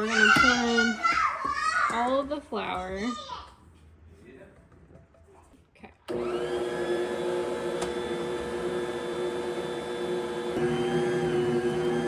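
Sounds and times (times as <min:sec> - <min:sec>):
stand mixer motor whine: 0:06.1 - 0:12.0.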